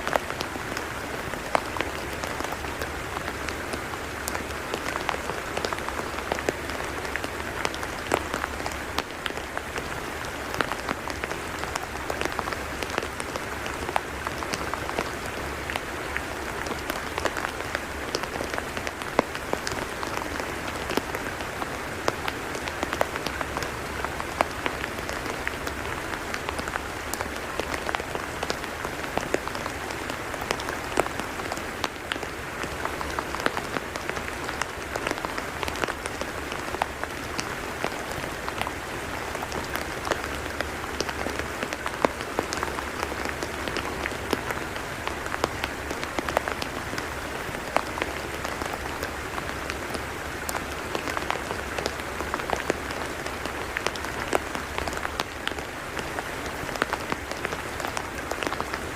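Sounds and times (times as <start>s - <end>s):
rain falling on mud: 0.0s - 58.9s.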